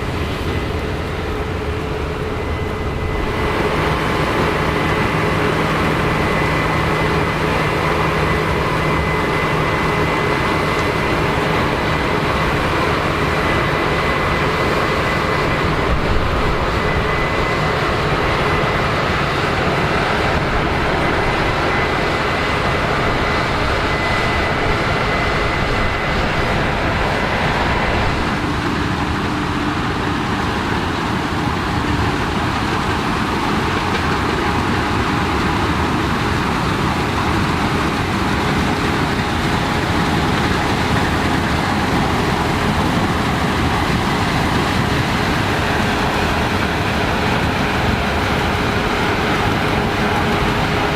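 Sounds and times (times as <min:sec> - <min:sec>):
combine harvester running: 0:00.0 - 0:50.9
faint high whine: 0:00.0 - 0:50.9.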